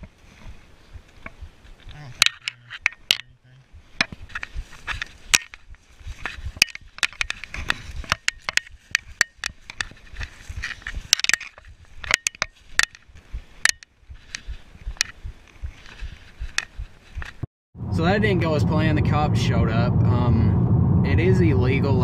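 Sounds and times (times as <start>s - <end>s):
crunching and scraping: 4.0s - 17.4s.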